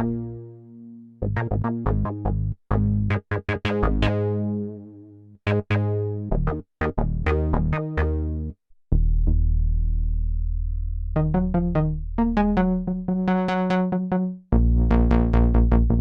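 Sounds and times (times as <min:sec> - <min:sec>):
held low synthesizer bass note: 0:08.1 - 0:16.0
synthesizer notes: 0:11.2 - 0:16.0.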